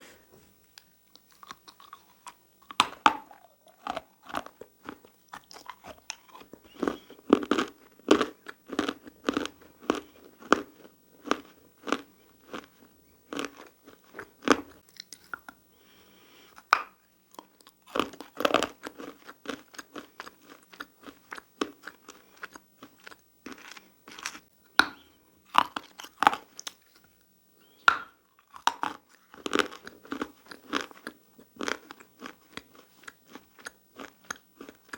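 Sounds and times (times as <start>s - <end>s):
chewing crunchy chalk: 0.8s - 15.6s, 28.4s - 34.9s.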